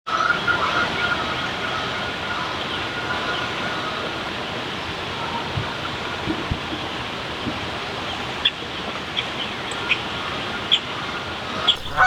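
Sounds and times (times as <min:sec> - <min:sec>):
creek water rushing: 0:11.8 - 0:12.0.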